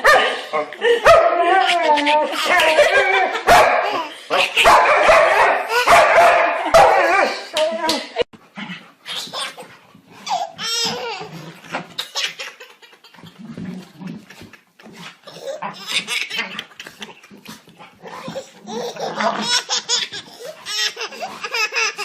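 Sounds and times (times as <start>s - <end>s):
baby laughing and squealing: 1.5s - 4.6s, 5.7s - 5.9s, 9.1s - 13.4s, 15.3s - 17.1s, 18.2s - 22.0s.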